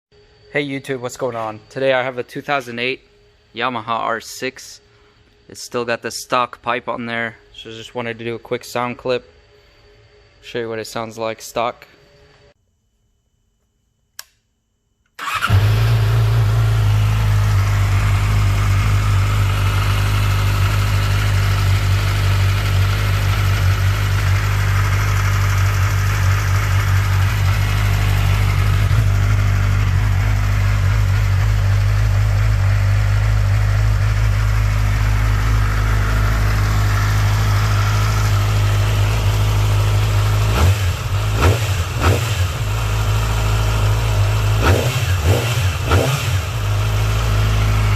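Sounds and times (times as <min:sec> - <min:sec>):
motorcycle engine idling: 0:15.2 - 0:47.9.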